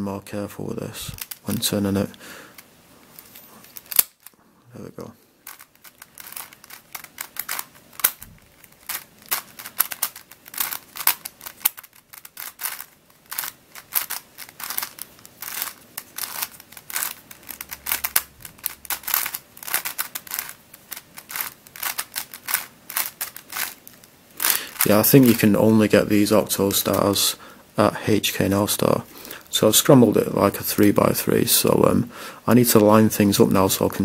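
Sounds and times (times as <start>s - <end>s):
puzzle cube clicking: 1.1s - 1.6s, 3.8s - 4.4s, 5.4s - 27.2s.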